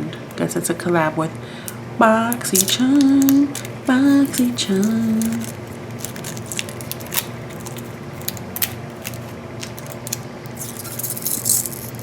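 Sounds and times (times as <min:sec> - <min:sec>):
steady low hum: 0:00.0 - 0:12.0
packaging crinkling: 0:02.5 - 0:12.0.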